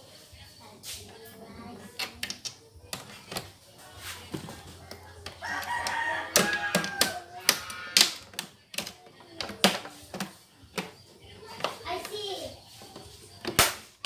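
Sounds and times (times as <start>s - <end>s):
rooster crowing: 4.5s - 8.1s
plastic laptop cover clicks: 13.5s - 13.9s.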